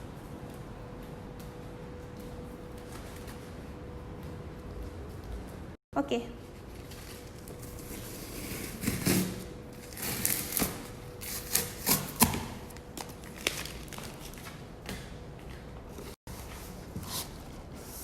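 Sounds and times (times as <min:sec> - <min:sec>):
hands opening cardboard parcel: 0:06.8 - 0:14.5.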